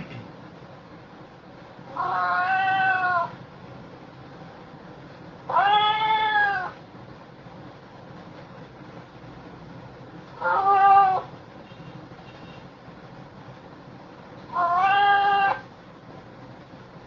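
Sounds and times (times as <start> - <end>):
cat meowing: 1.9 - 3.4, 5.5 - 6.8, 10.4 - 11.3, 14.5 - 15.7.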